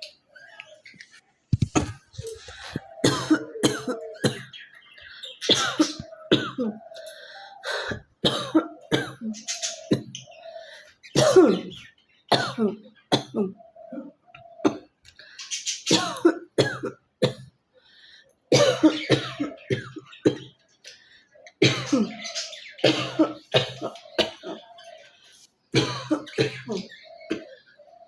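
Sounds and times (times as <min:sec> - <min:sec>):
woman coughing hard: 0:01.7 - 0:04.5, 0:05.4 - 0:06.8, 0:07.7 - 0:10.2, 0:11.2 - 0:13.6, 0:15.9 - 0:17.5, 0:18.5 - 0:20.5, 0:21.6 - 0:24.6, 0:25.8 - 0:27.5.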